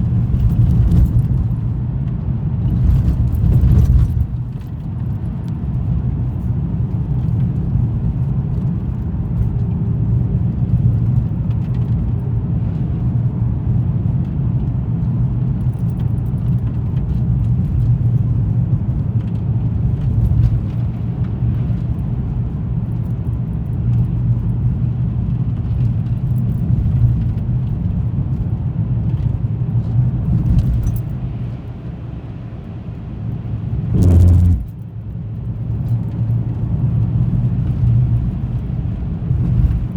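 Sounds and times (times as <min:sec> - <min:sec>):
car engine and tyre rumble: 0:00.0 - 0:39.9
short loud rush: 0:33.9 - 0:34.7.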